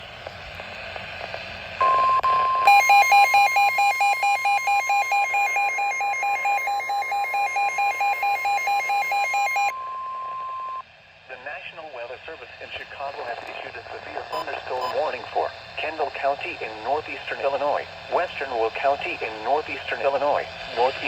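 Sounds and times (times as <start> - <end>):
radio static hiss: 0.0 - 2.7, 11.3 - 21.0
rapid alarm beeps: 1.8 - 10.8, 14.2 - 15.2.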